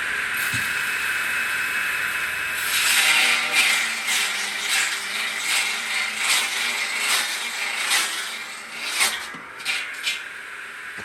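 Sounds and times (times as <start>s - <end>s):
hand tool rasping wood: 2.6s - 10.2s.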